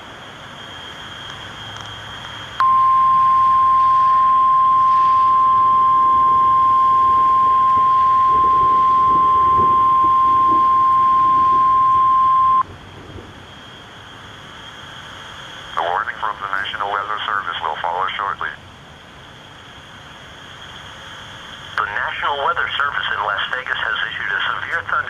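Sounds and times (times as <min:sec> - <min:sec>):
loud steady alarm tone: 0:00.6 - 0:12.7
radio hiss: 0:15.4 - 0:18.6, 0:20.2 - 0:25.0.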